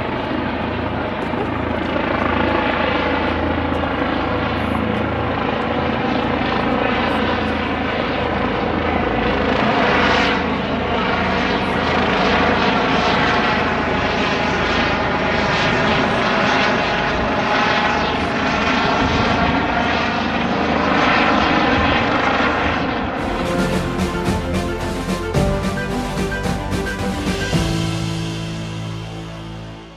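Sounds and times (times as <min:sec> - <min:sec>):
helicopter turbine whine: 0:00.0 - 0:29.9
music: 0:23.2 - 0:29.9.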